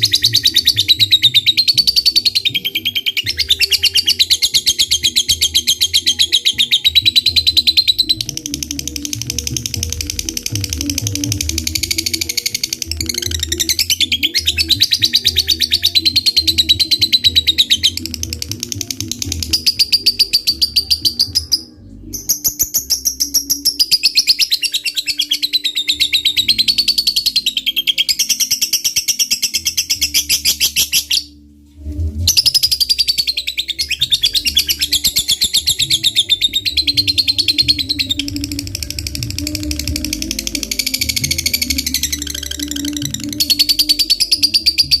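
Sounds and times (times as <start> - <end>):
lovebird chattering trill: 0.0 - 31.3, 32.3 - 45.0.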